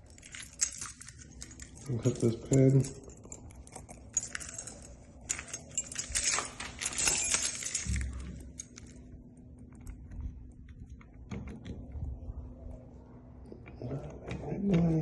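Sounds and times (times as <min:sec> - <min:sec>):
metal keys jangling in lock: 0:00.0 - 0:09.1.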